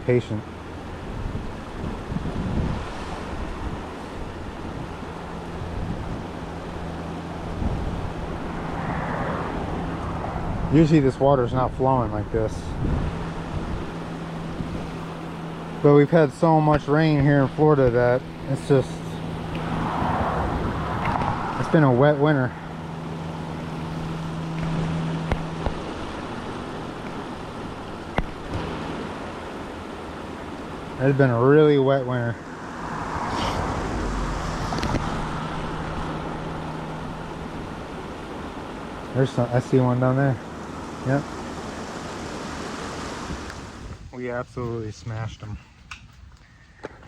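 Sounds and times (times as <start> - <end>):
rushing canal water: 0.0 - 43.9
low steady hum: 0.0 - 46.8
wind on microphone: 0.8 - 15.8, 16.7 - 28.9, 32.4 - 38.1, 41.9 - 44.7.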